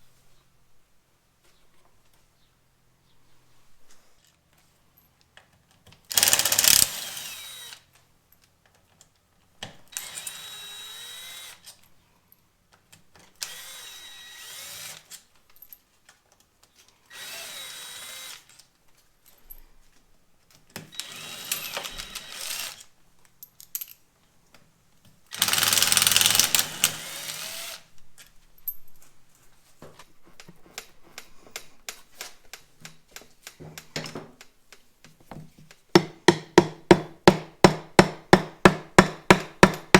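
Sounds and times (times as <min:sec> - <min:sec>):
electric power drill running: 0:06.1 - 0:07.8, 0:10.0 - 0:11.6, 0:13.4 - 0:15.0, 0:17.1 - 0:18.5, 0:20.9 - 0:22.8, 0:25.3 - 0:27.9.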